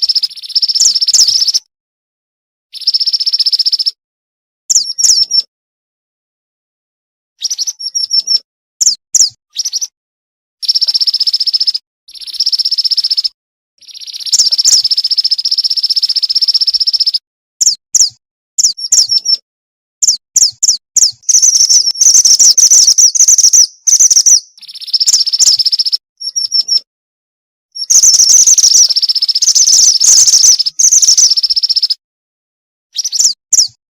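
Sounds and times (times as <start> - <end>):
bird chirping and trilling: 0.0 - 1.7, 2.7 - 4.0, 4.7 - 5.5, 7.4 - 9.9, 10.6 - 19.4, 20.0 - 26.9, 27.8 - 32.0, 33.0 - 33.8.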